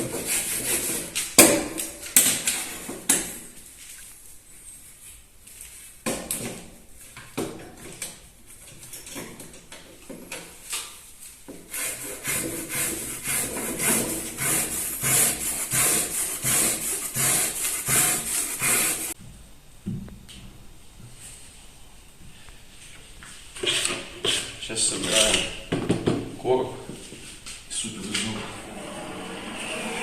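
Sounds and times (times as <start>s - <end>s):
rhythmic rasping strokes on board: 11.7s - 19.2s.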